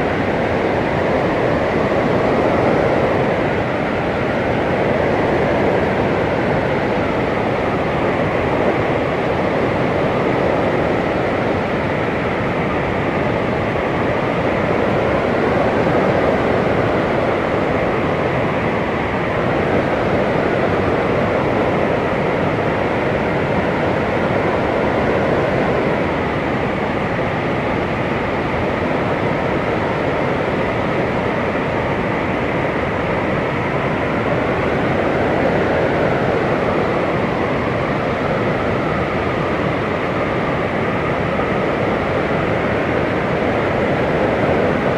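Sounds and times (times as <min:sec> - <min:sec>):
blizzard wind roaring: 0:00.0 - 0:44.9.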